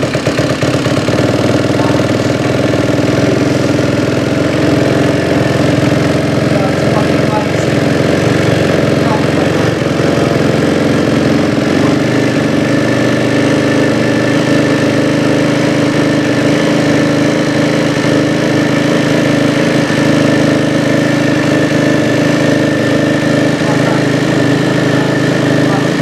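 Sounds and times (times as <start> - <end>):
motorcycle engine idling: 0.0 - 26.0.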